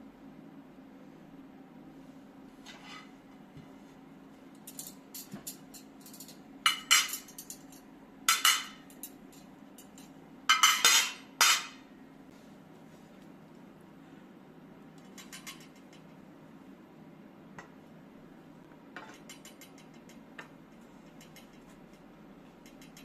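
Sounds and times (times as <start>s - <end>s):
low steady hum: 0.0s - 23.0s
dishes clinking and clattering: 4.7s - 11.8s, 15.0s - 16.1s, 19.0s - 22.0s.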